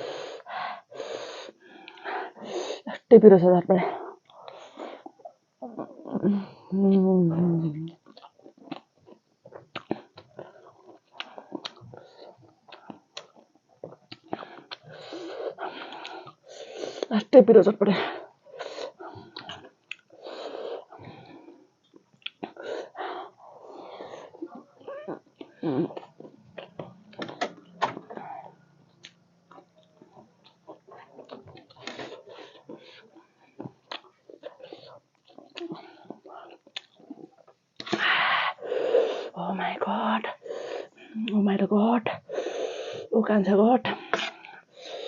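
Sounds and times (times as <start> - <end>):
faint low hum: 0.0 - 45.0
chewing crunchy puffed rice snack: 7.9 - 17.1, 28.2 - 38.1
crunchy snack chewing: 28.9 - 38.0.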